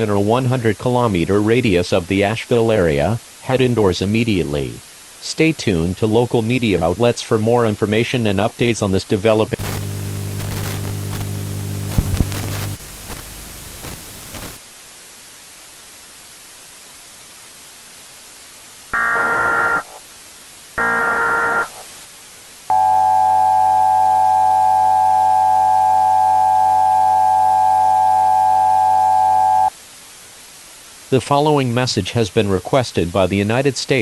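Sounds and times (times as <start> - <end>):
faint hiss: 0.0 - 19.0, 19.8 - 20.8, 21.7 - 22.8, 29.7 - 34.0
buzzing data bursts: 9.6 - 14.6, 19.0 - 20.0, 20.8 - 21.9
loud steady attention tone: 9.6 - 14.6, 19.0 - 20.0, 20.8 - 21.8, 22.7 - 29.7.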